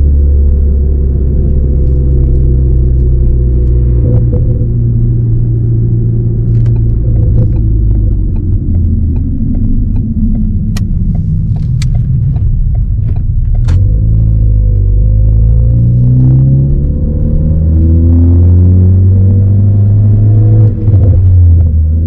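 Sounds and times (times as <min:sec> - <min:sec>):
exhaust pops and crackles: 0:00.0 - 0:04.9, 0:06.4 - 0:15.0
car engine revving: 0:00.0 - 0:22.0.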